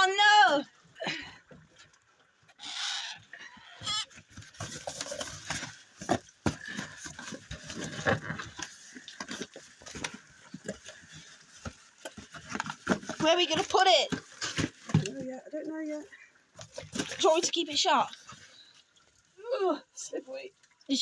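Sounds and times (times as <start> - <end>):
scuffling and rustling: 4.0 - 18.7.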